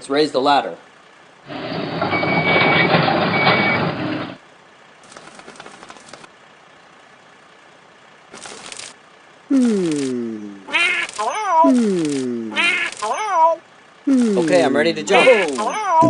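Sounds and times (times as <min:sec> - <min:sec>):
mechanical whirring hum: 0:00.0 - 0:16.0
short beeps: 0:02.1 - 0:03.9.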